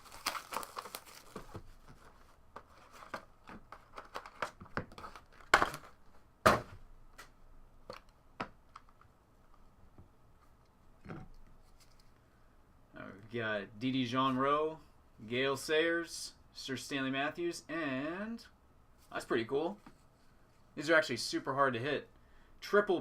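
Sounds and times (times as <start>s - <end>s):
plastic wrap crinkling and tearing: 0.0s - 1.6s.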